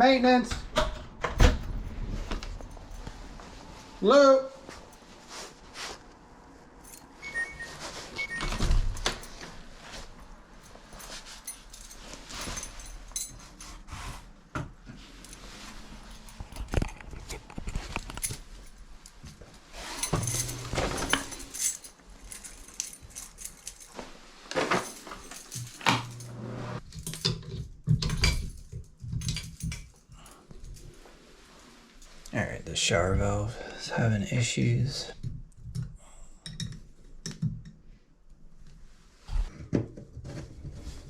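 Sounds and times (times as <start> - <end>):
keys jangling: 10.6 - 13.8, 15.2 - 24.0, 24.7 - 30.9.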